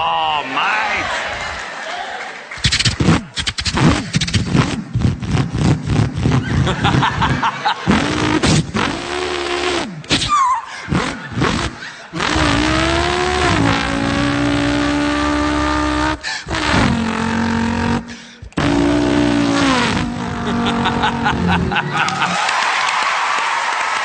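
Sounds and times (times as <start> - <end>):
people clapping: 0.5 - 3.4, 21.8 - 24.0
man imitating car engine: 2.7 - 22.4.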